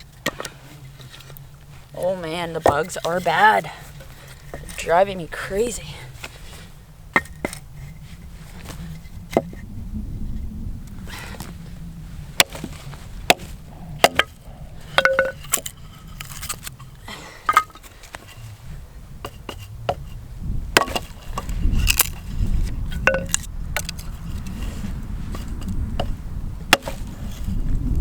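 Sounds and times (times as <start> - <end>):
axe chopping wood: 12.4 - 12.7, 13.3 - 14.4, 20.8 - 21.2, 26.7 - 27.1.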